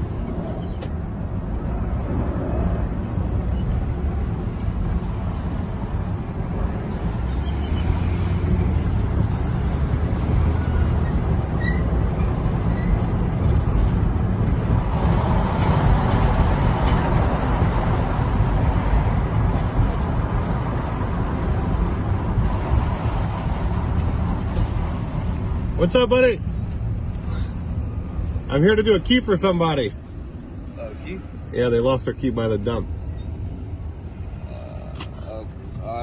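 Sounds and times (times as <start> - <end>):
car engine and road noise: 0.0 - 36.0.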